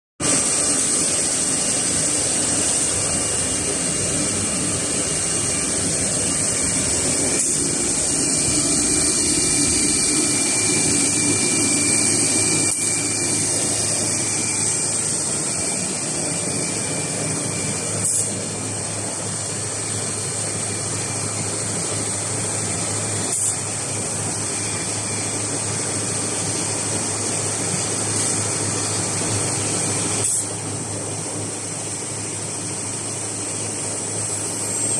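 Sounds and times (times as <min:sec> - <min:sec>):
router spindle whine and cutting: 0:00.2 - 0:30.8
low hum: 0:00.4 - 0:21.9.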